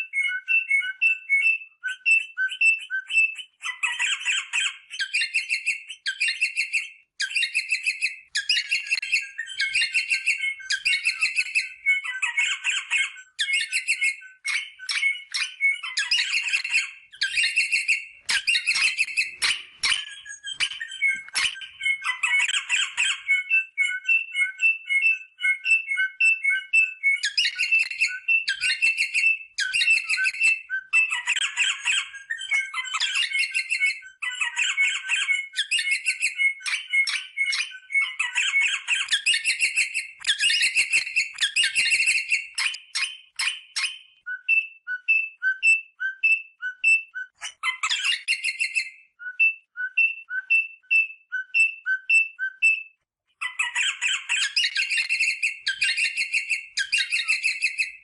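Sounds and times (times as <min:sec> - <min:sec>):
parrot whistled notes: 0:00.0 - 0:58.0
parrot chattering and squawking: 0:03.6 - 0:24.2, 0:31.0 - 0:44.1, 0:47.4 - 0:48.9, 0:53.4 - 0:58.0.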